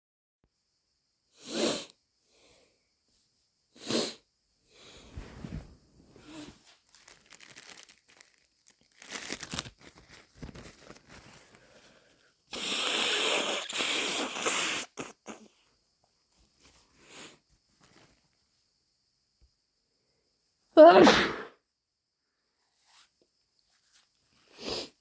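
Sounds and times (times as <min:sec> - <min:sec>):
nose blowing into tissue: 0:01.4 - 0:01.9, 0:03.8 - 0:04.2, 0:12.5 - 0:15.5, 0:20.9 - 0:21.5
breathy noises: 0:04.8 - 0:08.2
tissue crinkling: 0:05.1 - 0:11.8.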